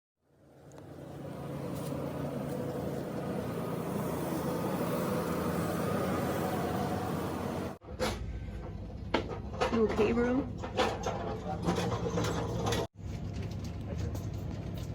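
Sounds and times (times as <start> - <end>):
vehicle engine hum: 0.3 - 7.8.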